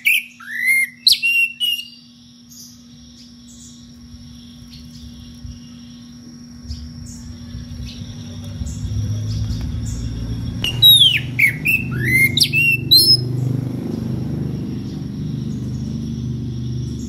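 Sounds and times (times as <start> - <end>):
bird singing whistled notes: 0.0 - 17.0
low hum: 6.5 - 17.0.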